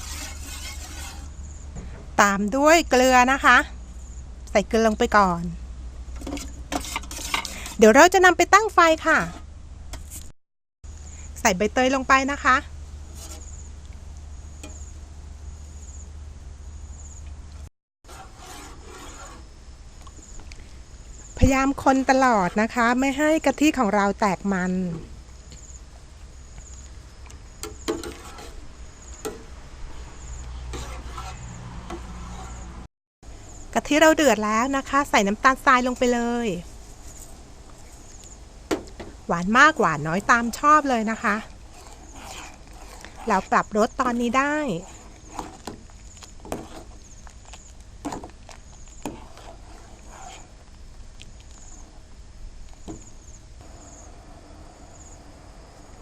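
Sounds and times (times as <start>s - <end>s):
spoon stirring in a pot: 0.0s - 1.3s, 6.2s - 7.9s, 27.6s - 29.5s, 30.6s - 32.7s, 34.8s - 52.1s
spoon knocking and scraping pot: 6.2s - 7.8s, 27.6s - 28.6s, 29.2s - 29.5s, 30.7s - 32.6s, 40.2s - 47.0s, 48.0s - 50.4s
cricket chirping: 13.4s - 17.3s, 52.7s - 56.0s.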